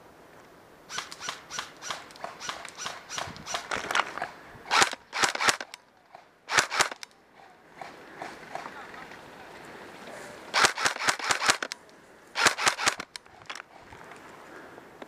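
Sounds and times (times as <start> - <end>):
airsoft gun shots clicking: 0.9 - 4.0, 4.7 - 5.8, 6.5 - 7.1, 10.6 - 11.8, 12.4 - 13.6
louder gun cracks: 6.5 - 7.1, 10.6 - 11.8.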